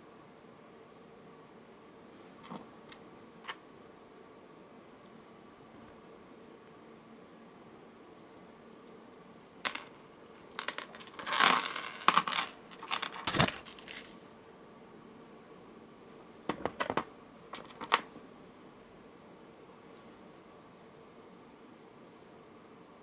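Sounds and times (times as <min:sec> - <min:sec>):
beads clicking and rattling: 0:09.5 - 0:14.2.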